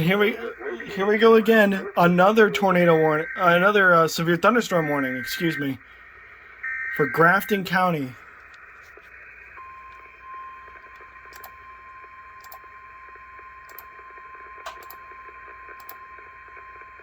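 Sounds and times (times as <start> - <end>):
radio hiss: 0.0 - 17.0
steady high alarm tone: 1.0 - 8.2.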